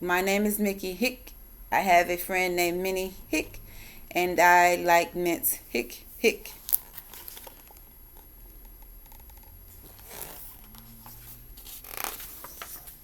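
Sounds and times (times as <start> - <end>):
paper page turning: 6.6 - 7.8, 9.1 - 13.0.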